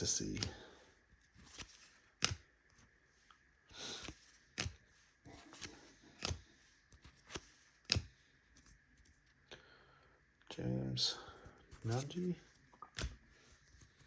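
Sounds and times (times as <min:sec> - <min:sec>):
cards sliding: 0:00.2 - 0:02.9, 0:03.7 - 0:09.3, 0:11.6 - 0:14.0
card snaps and taps: 0:01.4 - 0:02.4, 0:04.0 - 0:04.8, 0:05.6 - 0:06.4, 0:07.2 - 0:08.1.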